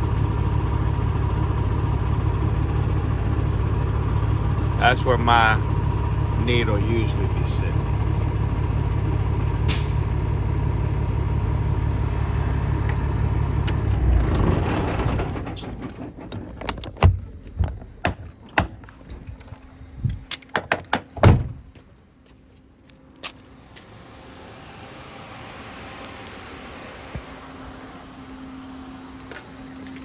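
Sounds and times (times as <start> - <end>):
diesel truck engine idling: 0.0 - 20.4, 23.6 - 30.0
sharp clicks and knocks: 13.6 - 21.5
keys jingling: 15.4 - 23.0, 26.0 - 26.9, 29.1 - 30.0.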